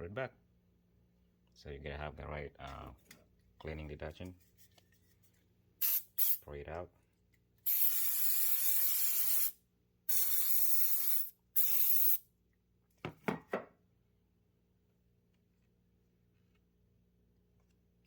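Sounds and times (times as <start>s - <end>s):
aerosol spray hissing: 5.8s - 6.4s, 7.7s - 12.2s.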